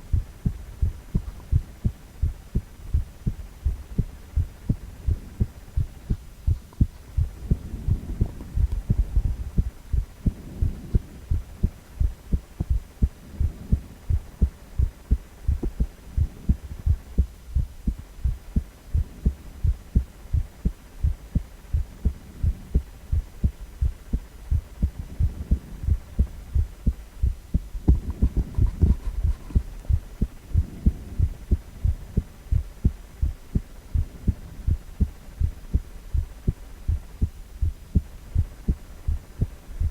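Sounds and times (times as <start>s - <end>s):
low heartbeat pulses: 0.0s - 39.9s.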